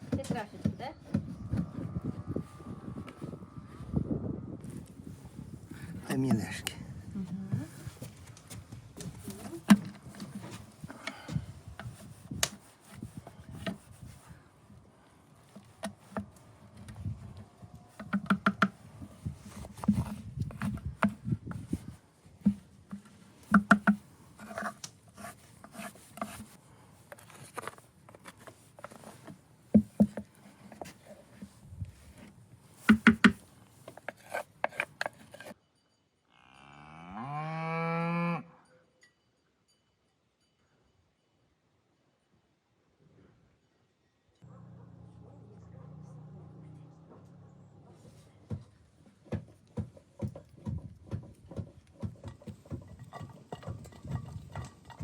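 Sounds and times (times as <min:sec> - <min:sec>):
irregular knocks and taps: 0:17.9 - 0:18.8, 0:22.4 - 0:24.0, 0:28.8 - 0:31.5, 0:32.8 - 0:35.5, 0:48.5 - 0:55.0
cow mooing: 0:36.4 - 0:38.5.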